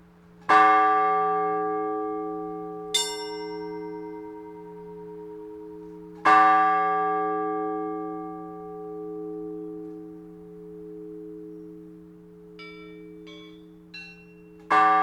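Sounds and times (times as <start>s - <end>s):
big church bell strike: 0.5s - 15.0s
higher church bell strike: 0.5s - 15.0s
low bell hum: 2.4s - 6.6s, 8.3s - 15.0s.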